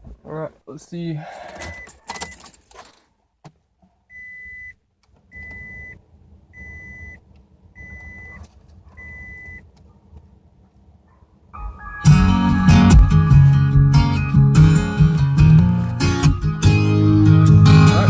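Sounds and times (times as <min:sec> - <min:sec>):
car warning chime beeping: 0:01.6 - 0:02.4, 0:04.1 - 0:06.0, 0:06.6 - 0:07.2, 0:07.8 - 0:08.4, 0:09.0 - 0:09.6.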